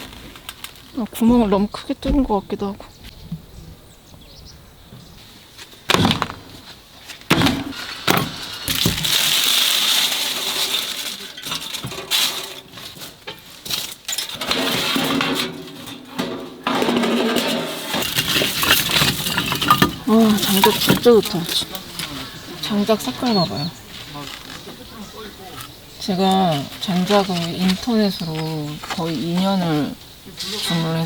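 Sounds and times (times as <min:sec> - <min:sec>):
rustling: 0:00.0 - 0:31.0
objects knocking and clattering: 0:05.9 - 0:06.6, 0:07.2 - 0:29.0.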